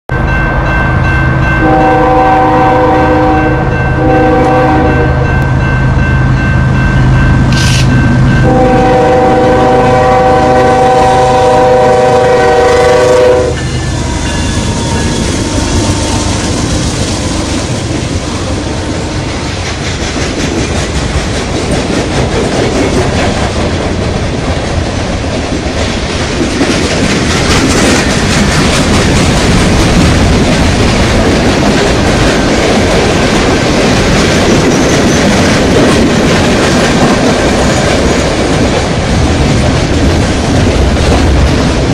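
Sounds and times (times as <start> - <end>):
train wheels clattering on rails: 1.0 - 41.9
train horn blasts: 1.6 - 5.5, 8.4 - 16.6.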